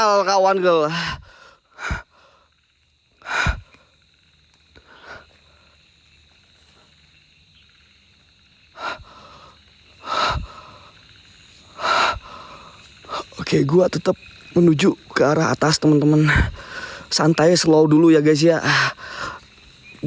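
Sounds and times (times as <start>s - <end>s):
faint high insect drone: 0.0s - 20.0s
man breathing hard: 0.9s - 2.6s, 3.2s - 4.0s, 4.8s - 5.8s, 8.8s - 13.4s, 16.2s - 17.1s, 18.6s - 19.6s.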